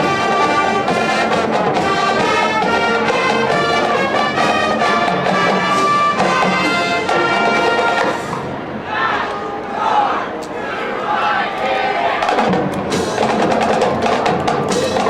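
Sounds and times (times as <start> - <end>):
brass instruments: 0.0 - 15.0
marching band playing: 0.0 - 15.0.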